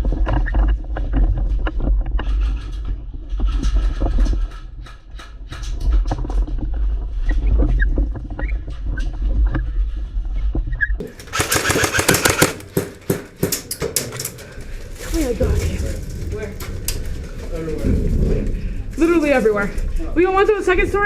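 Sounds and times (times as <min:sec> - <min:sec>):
rapid rattling clicks: 0:11.1 - 0:14.4
wind buffeting microphone: 0:15.2 - 0:21.0.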